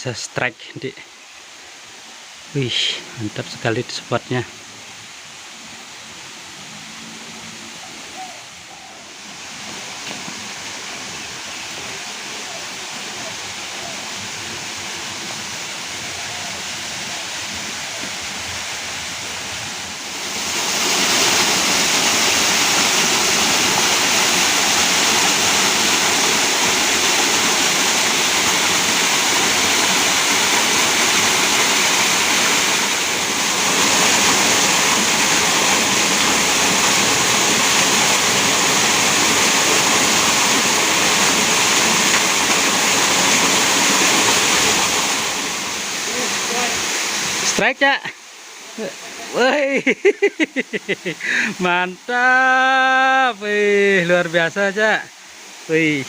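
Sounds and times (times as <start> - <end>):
flowing river water: 0.0 - 56.0.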